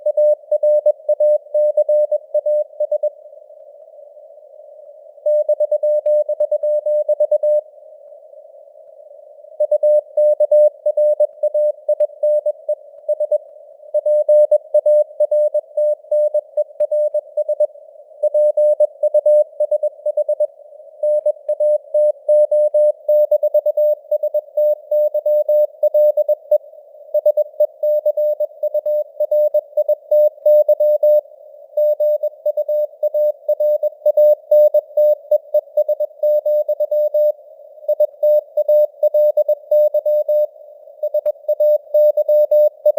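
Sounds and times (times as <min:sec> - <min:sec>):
morse code tone: 0:37.9 - 0:42.9.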